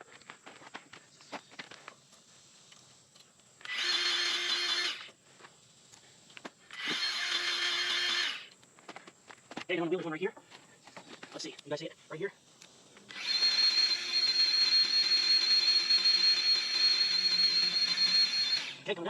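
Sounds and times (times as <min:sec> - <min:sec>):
cordless grease gun pumping: 0:01.5 - 0:08.7, 0:12.5 - 0:18.9.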